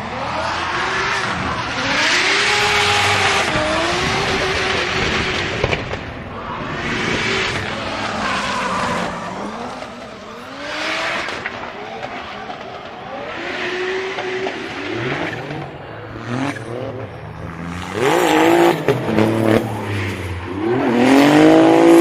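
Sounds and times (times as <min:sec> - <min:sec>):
car engine revving: 0:00.0 - 0:22.0
sharp crack: 0:04.7 - 0:08.8.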